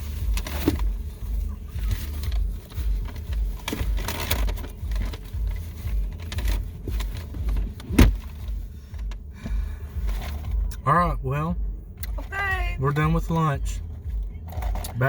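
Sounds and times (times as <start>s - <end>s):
paper wrappers rustling: 0.0s - 8.5s
low rumble: 0.0s - 15.0s.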